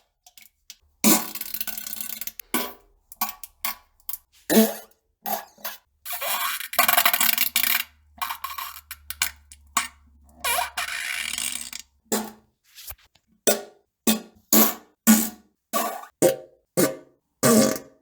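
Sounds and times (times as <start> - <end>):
fart sounds: 17.4 - 18.0.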